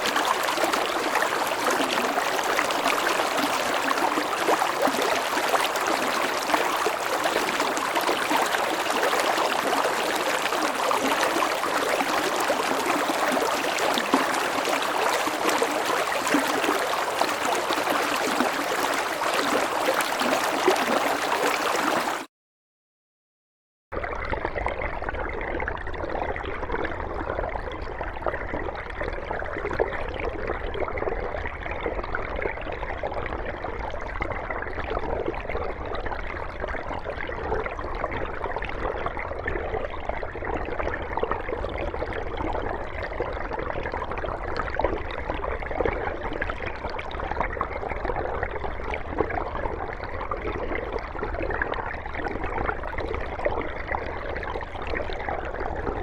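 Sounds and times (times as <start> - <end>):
stream flowing: 0.0 - 22.3.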